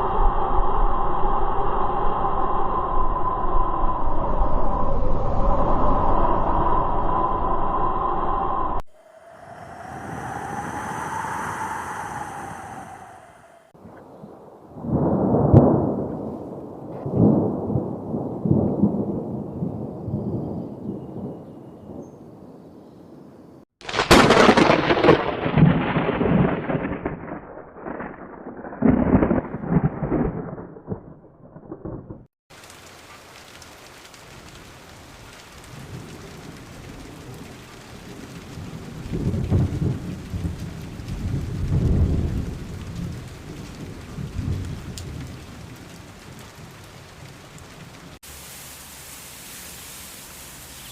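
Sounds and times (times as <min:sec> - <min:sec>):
thunder rumbling: 0:00.0 - 0:22.0, 0:23.9 - 0:32.9, 0:34.1 - 0:48.2
heavy rain hissing: 0:08.8 - 0:13.8, 0:32.5 - 0:50.9
close thunderclap: 0:14.7 - 0:20.6, 0:23.8 - 0:32.3, 0:35.6 - 0:48.2.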